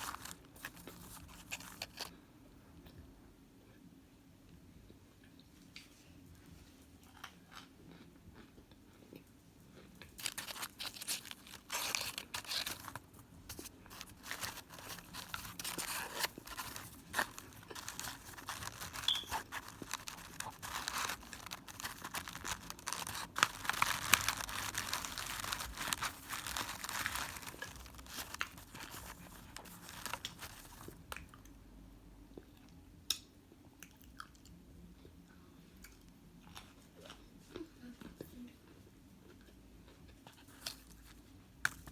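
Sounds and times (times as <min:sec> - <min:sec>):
chewing and crunching: 0:00.0 - 0:02.1, 0:07.0 - 0:31.5, 0:33.7 - 0:41.9.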